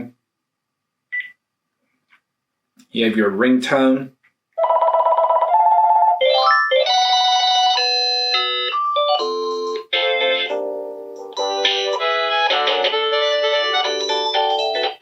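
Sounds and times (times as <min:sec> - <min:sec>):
electronic ringtone melodies: 0:04.6 - 0:15.0.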